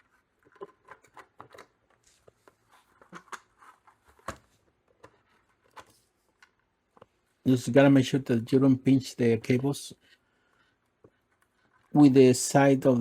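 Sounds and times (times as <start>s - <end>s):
plastic clicks taps and rustles: 0.4s - 3.5s.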